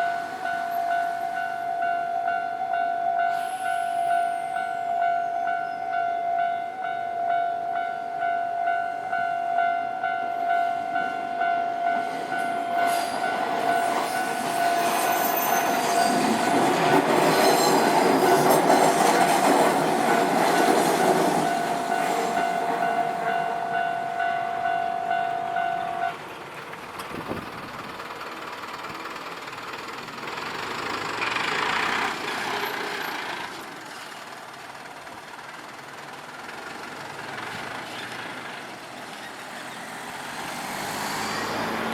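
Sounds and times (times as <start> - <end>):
level-crossing alarm ringing: 0.0 - 26.2
train wheels clattering on rails: 11.9 - 41.9.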